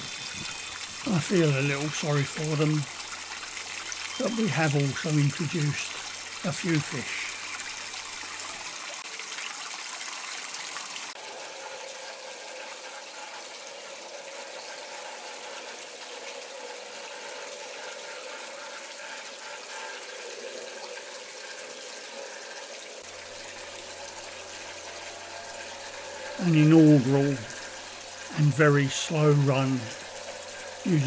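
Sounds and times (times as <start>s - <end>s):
waterfall splashing into pond: 0.0s - 31.0s.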